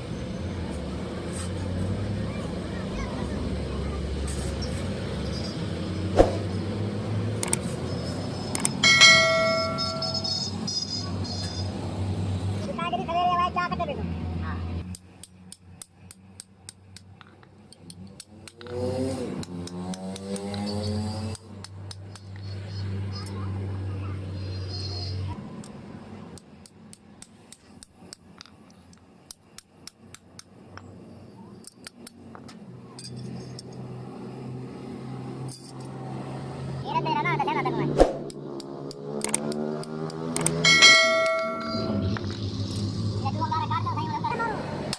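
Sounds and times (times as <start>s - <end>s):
metal tools clinking on metal: 8.6s - 10.5s, 32.9s - 33.9s, 35.4s - 36.0s, 40.6s - 42.9s
hammer clanging on steel: 8.8s - 10.4s, 40.7s - 42.2s.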